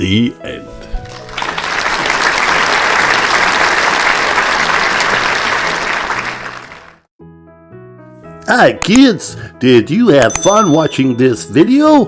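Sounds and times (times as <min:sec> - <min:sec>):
crowd applause: 0:01.0 - 0:07.1.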